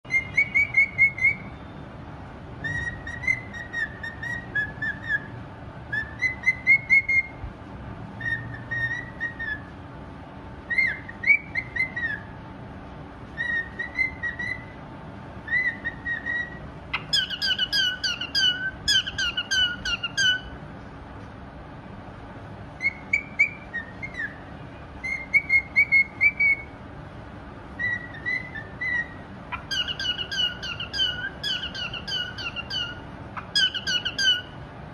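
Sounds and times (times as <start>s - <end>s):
cockatiel whistling: 0.1s - 1.8s, 2.6s - 5.3s, 5.9s - 7.4s, 8.2s - 9.7s, 10.7s - 12.3s, 13.4s - 14.8s, 15.4s - 20.5s, 22.8s - 26.7s, 27.8s - 34.6s.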